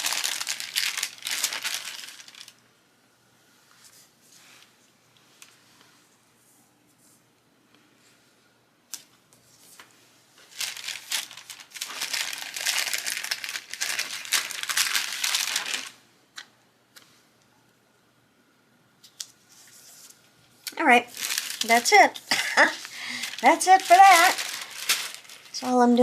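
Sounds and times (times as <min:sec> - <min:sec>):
paper crinkling: 0:00.0 - 0:02.6, 0:08.9 - 0:16.0, 0:20.8 - 0:26.0.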